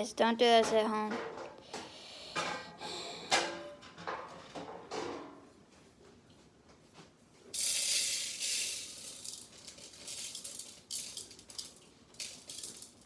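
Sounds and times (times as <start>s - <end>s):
soybean pieces spilling and rattling: 7.6s - 13.0s.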